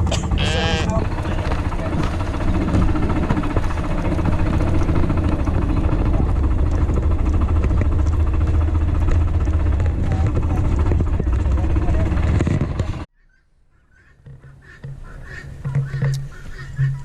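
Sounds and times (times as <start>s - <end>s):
engine idling: 0.0s - 13.1s.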